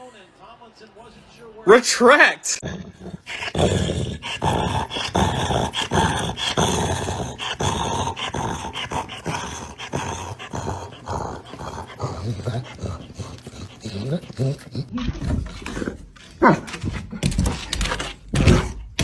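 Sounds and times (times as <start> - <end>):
dog growling: 2.6 - 17.6.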